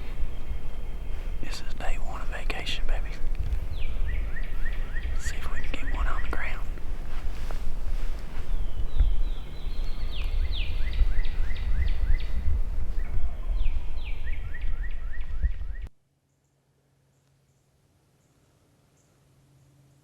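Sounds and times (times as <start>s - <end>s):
wind rumbling on microphone: 0.0s - 15.9s
songbird whistling: 3.7s - 6.0s, 13.0s - 15.9s.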